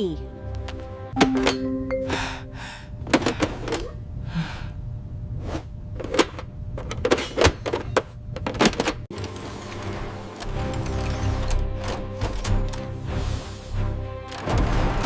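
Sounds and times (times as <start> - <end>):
lock mechanism clicking: 6.0 - 12.9.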